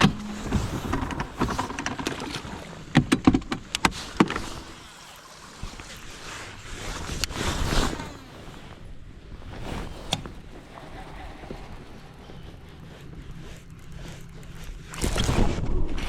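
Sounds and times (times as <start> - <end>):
knocks and clicks of gear: 0.0 - 4.8, 10.0 - 10.4.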